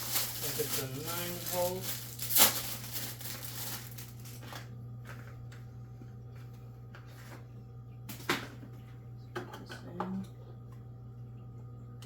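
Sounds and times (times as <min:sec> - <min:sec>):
rustling plastic parts: 0:00.0 - 0:05.2.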